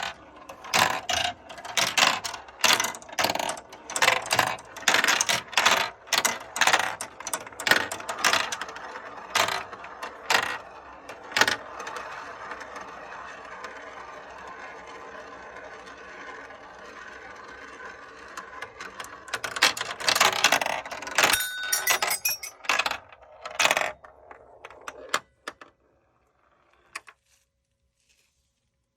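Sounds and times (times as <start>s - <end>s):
marbles clicking and rolling: 20.1s - 22.6s.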